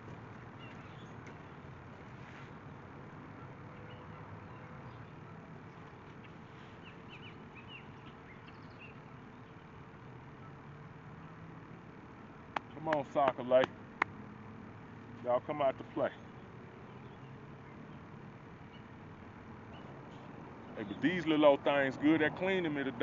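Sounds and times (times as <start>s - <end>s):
bird chirps: 3.8s - 9.6s.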